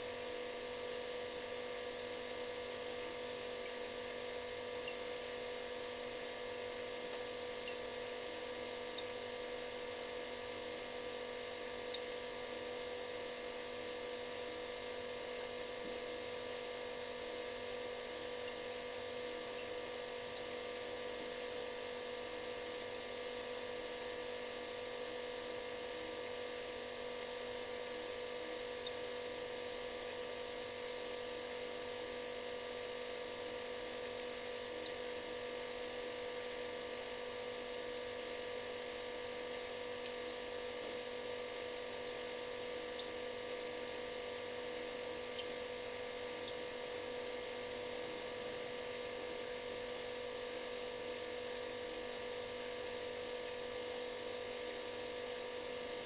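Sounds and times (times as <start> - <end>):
refrigerator buzzing hum: 0.0 - 56.0
faint ticks: 1.6 - 2.5, 3.5 - 5.2, 7.1 - 7.9, 8.9 - 9.3, 11.8 - 13.6, 18.0 - 18.7, 19.5 - 21.5, 25.6 - 29.3, 30.0 - 31.6, 39.4 - 43.9, 45.2 - 45.6, 46.3 - 46.6, 55.3 - 55.8.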